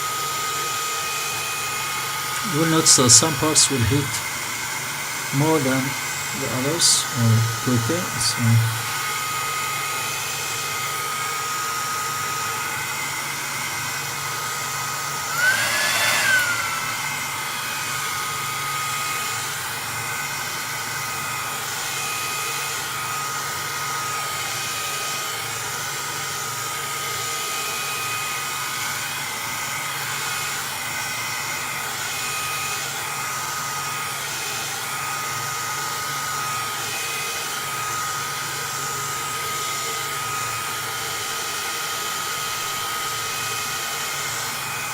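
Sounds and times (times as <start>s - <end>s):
hot-air blower running: 0.0s - 44.9s
whine rising and falling: 15.3s - 17.9s.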